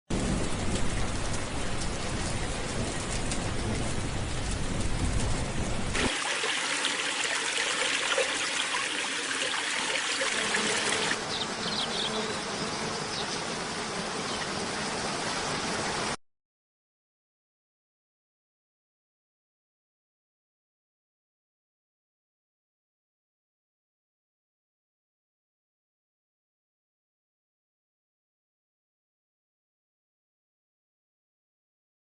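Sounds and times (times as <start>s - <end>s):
splashing stream: 5.9s - 11.4s
water rushing: 5.9s - 12.0s.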